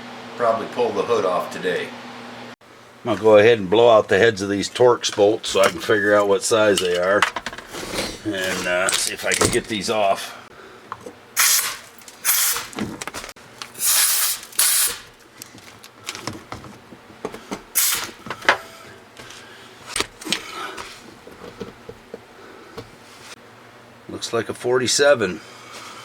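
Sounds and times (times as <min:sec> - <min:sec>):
tool clicks and knocks: 0:06.8 - 0:07.7
air blowgun hissing: 0:11.4 - 0:12.7, 0:13.8 - 0:15.1, 0:17.8 - 0:18.2.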